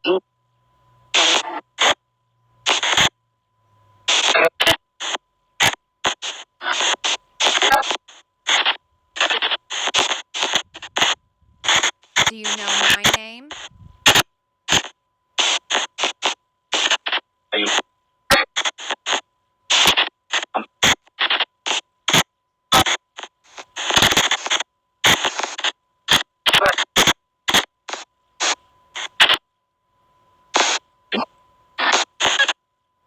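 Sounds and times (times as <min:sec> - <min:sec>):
faint steady high tone: 0:12.3 - 0:13.6.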